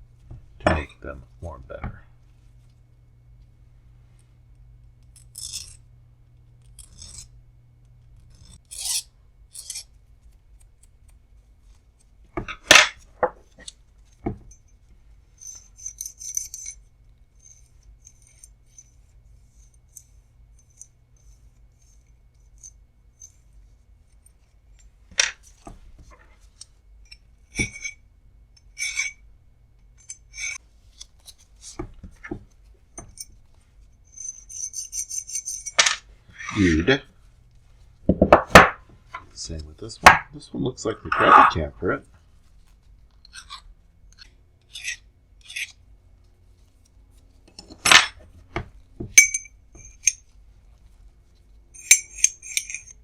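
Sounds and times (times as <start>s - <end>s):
hand file rasping on metal: 44.7s - 45.8s.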